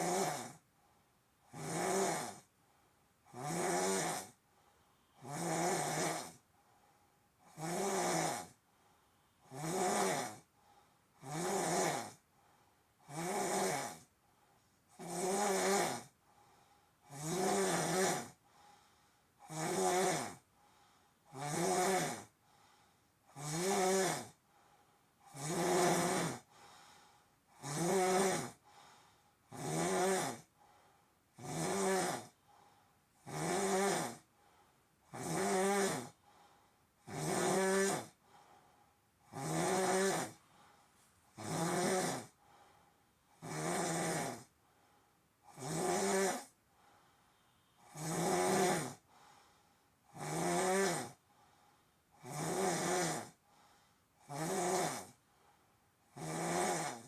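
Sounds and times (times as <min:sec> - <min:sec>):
man snoring: 0:00.0 - 0:00.6, 0:01.5 - 0:02.5, 0:03.3 - 0:04.4, 0:05.2 - 0:06.4, 0:07.4 - 0:08.6, 0:09.4 - 0:10.5, 0:11.2 - 0:12.2, 0:13.0 - 0:14.1, 0:14.9 - 0:16.2, 0:17.0 - 0:18.4, 0:19.4 - 0:20.4, 0:21.3 - 0:22.3, 0:23.3 - 0:24.4, 0:25.3 - 0:26.7, 0:27.5 - 0:28.6, 0:29.5 - 0:30.5, 0:31.4 - 0:32.4, 0:33.2 - 0:34.3, 0:35.1 - 0:36.2, 0:37.0 - 0:38.2, 0:39.3 - 0:40.4, 0:41.4 - 0:42.4, 0:43.4 - 0:44.5, 0:45.5 - 0:46.5, 0:47.8 - 0:49.1, 0:50.1 - 0:51.2, 0:52.2 - 0:53.4, 0:54.2 - 0:55.2, 0:56.1 - 0:57.0.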